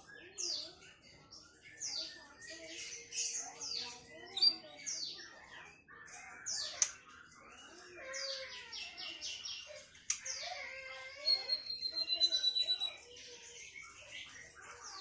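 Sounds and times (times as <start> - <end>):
songbird singing: 0.0 - 15.0.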